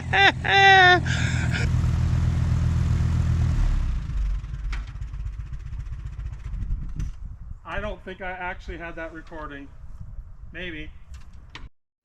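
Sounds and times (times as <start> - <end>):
tractor engine running under load: 0.0 - 7.2.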